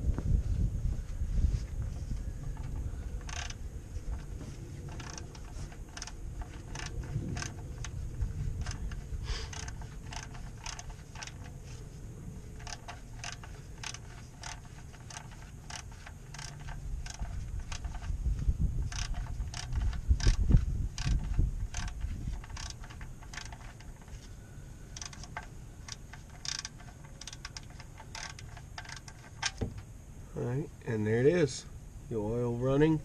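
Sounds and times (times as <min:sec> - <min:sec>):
socket ratchet clicking: 0:02.6 - 0:11.6, 0:12.5 - 0:18.1, 0:18.8 - 0:24.3, 0:24.9 - 0:29.8.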